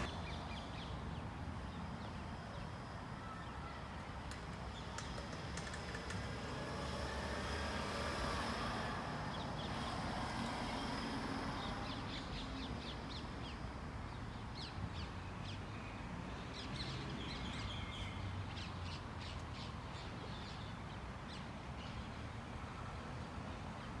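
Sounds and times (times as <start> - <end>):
birds chirping: 0.0 - 6.2.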